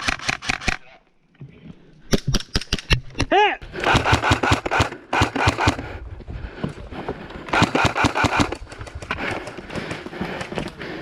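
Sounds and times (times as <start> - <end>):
airsoft rifle full-auto bursts: 3.8 - 5.9, 7.5 - 8.7.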